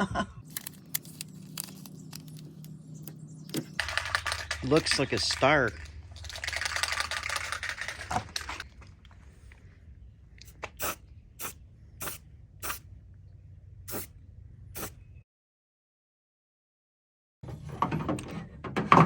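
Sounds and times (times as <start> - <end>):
spray paint can hissing: 10.8 - 12.8, 13.9 - 14.1, 14.8 - 15.0.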